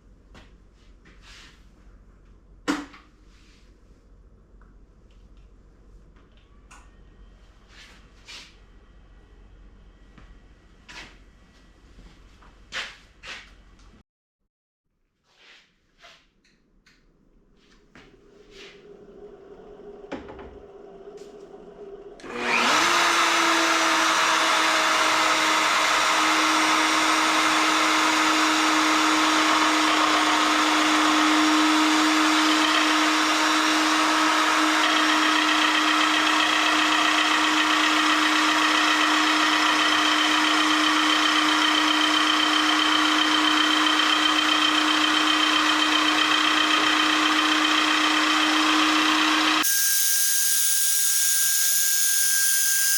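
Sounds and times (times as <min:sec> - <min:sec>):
wood router motor whine: 0:19.1 - 0:52.9.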